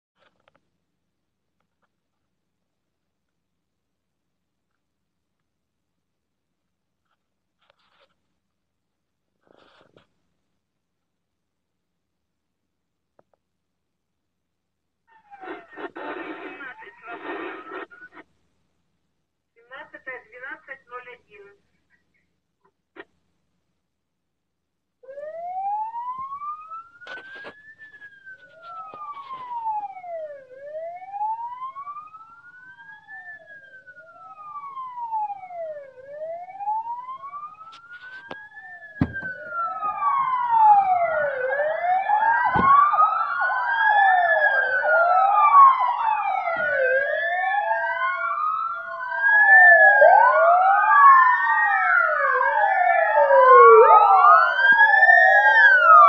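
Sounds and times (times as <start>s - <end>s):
ambulance sirens wailing: 25.0s - 56.0s.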